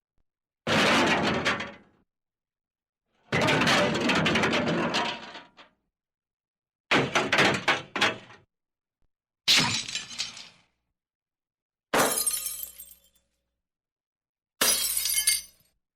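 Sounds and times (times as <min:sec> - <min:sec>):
breaking pieces clattering: 0:12.0 - 0:13.0, 0:14.6 - 0:15.6
things smashing and shattering: 0:12.0 - 0:13.0, 0:14.6 - 0:15.6.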